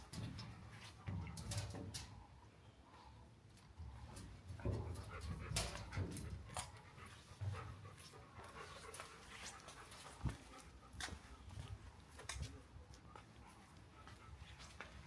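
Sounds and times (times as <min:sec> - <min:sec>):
dog panting: 0:04.6 - 0:12.2, 0:12.8 - 0:15.0.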